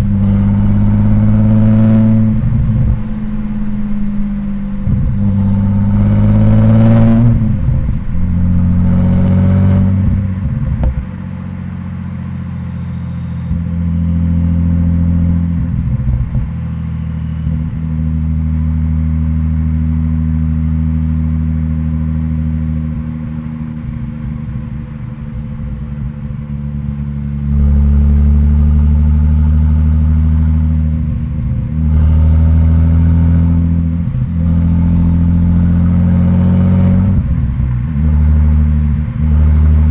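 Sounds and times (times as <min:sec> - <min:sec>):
turbo whistle: 0:00.0 - 0:17.6, 0:31.8 - 0:39.9
car engine cruising: 0:00.0 - 0:39.9.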